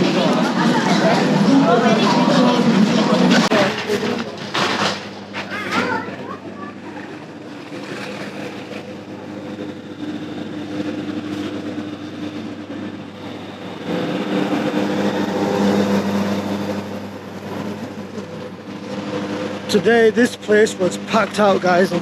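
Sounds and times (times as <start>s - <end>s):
vehicle engine humming: 0.0s - 22.0s.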